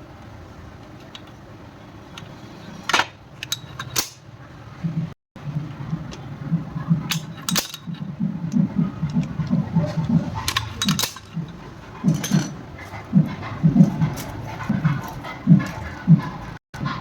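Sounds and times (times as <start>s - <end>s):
dull low knocks: 4.8s - 17.0s.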